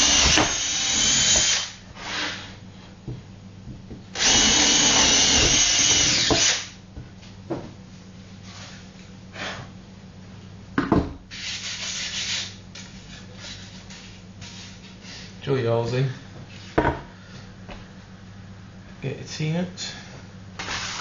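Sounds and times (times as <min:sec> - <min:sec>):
power drill boring through wood: 0:00.0 - 0:02.5, 0:04.2 - 0:06.8, 0:20.6 - 0:21.0.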